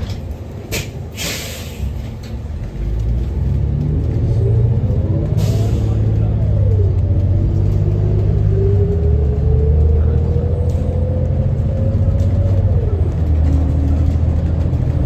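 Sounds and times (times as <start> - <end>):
bus engine rumble and whine: 0.0 - 15.0
air hiss: 0.7 - 2.0.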